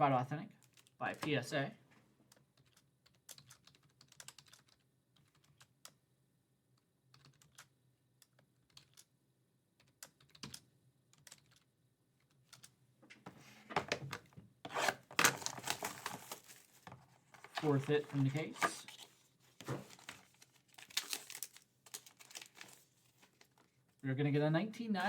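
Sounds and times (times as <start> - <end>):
computer keyboard typing: 2.3 - 6.0, 7.1 - 9.1, 9.8 - 12.7.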